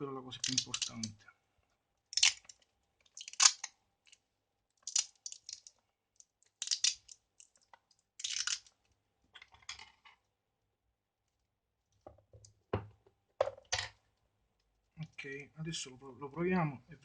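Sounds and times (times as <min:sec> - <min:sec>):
crackly clicking of cable handling: 0:02.2 - 0:08.0.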